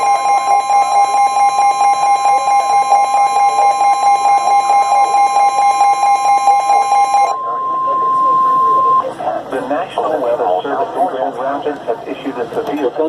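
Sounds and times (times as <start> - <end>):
steady two-pitch alert tone: 0.0 - 9.1.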